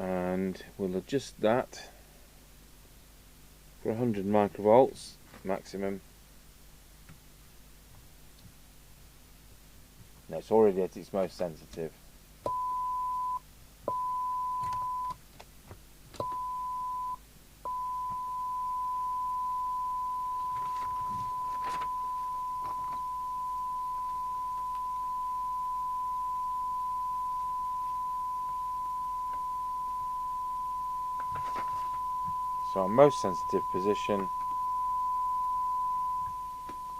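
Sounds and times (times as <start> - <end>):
steady test tone from radio speaker: 12.4 - 15.2, 16.2 - 36.9.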